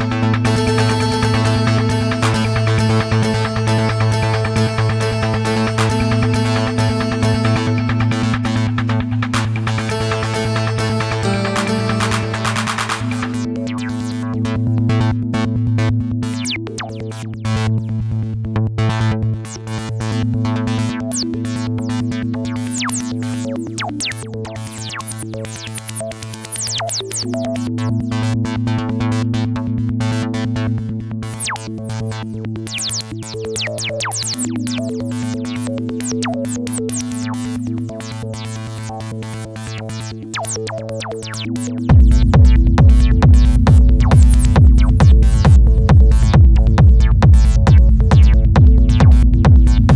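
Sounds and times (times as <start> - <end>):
held synth note: 0.0 - 13.8
synth bass drone: 0.0 - 25.0, 27.4 - 49.9.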